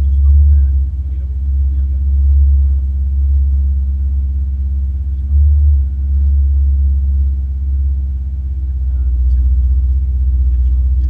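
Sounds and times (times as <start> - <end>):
car engine drone from cabin: 0.0 - 11.0.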